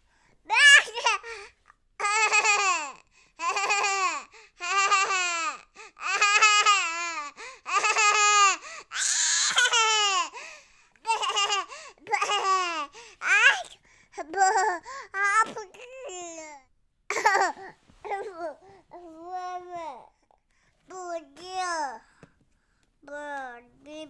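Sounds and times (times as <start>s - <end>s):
baby laughing: 17.1s - 17.7s.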